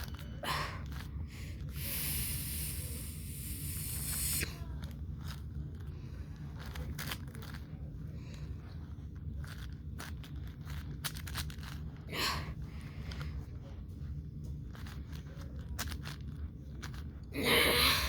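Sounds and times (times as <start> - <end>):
puzzle cube clicking and scraping: 0.0 - 13.6, 14.2 - 18.0
steady hiss: 1.6 - 4.5.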